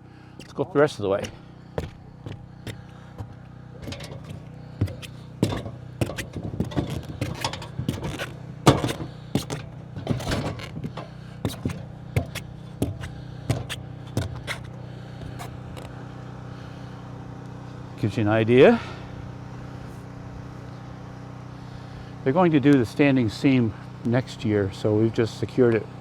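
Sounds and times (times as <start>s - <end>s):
steady low hum: 0.0s - 17.1s
boots on ladder rungs: 0.2s - 16.0s.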